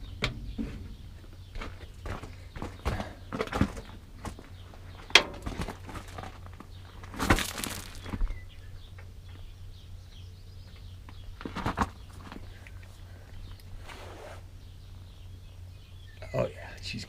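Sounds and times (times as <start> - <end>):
metallic knocks and clatter: 0.0 - 4.0, 5.0 - 6.5
steady low hum: 0.0 - 17.0.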